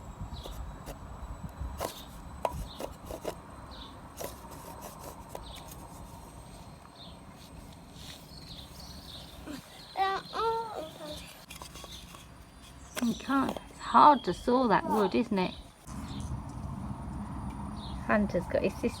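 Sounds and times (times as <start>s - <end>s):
plastic toy saw scraping wood: 1.8s - 3.4s.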